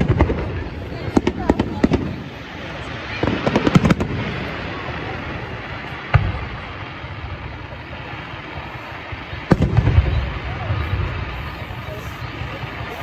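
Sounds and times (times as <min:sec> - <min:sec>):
deep firework boom: 0:00.0 - 0:13.0
fireworks crackling bangs: 0:00.0 - 0:13.0.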